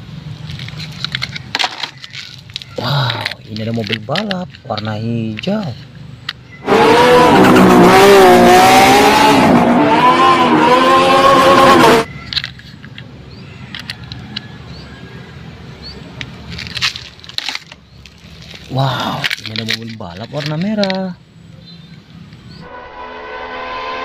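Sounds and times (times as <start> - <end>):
race car engine revving: 6.6 - 12.1.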